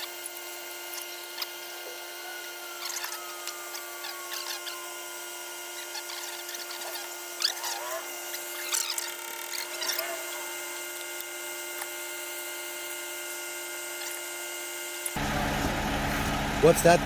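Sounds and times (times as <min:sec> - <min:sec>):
concrete pump truck whine: 0:00.0 - 0:17.0
short squeaks: 0:02.3 - 0:10.4.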